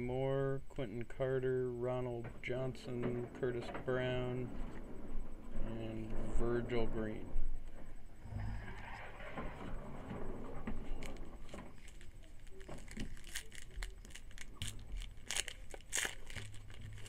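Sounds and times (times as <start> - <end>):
foil pack crinkling: 10.9 - 17.0
cards being handled: 11.8 - 17.0.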